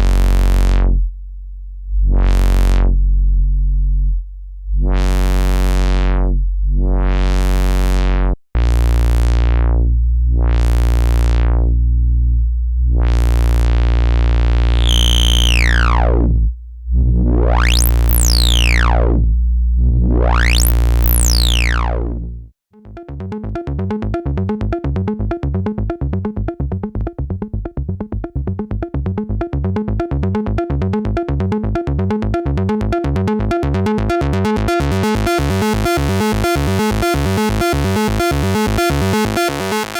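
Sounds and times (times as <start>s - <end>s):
synthesizer filter sweep on low tone: 0.0s - 39.9s
sequenced synthesizer notes: 4.8s - 39.9s.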